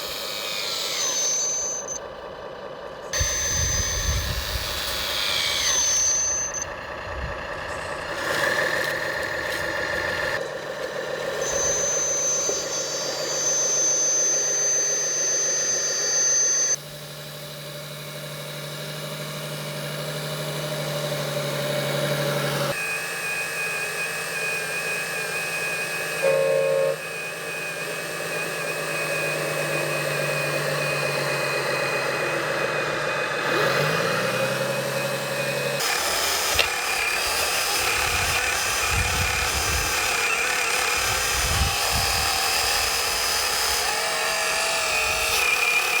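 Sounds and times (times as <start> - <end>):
electric motors whirring: 0.0 - 46.0
low rumbles: 1.2 - 11.0.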